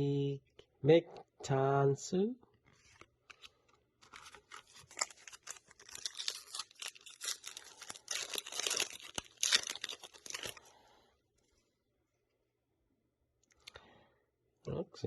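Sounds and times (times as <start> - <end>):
foil pack tearing and crinkling: 4.0 - 10.7.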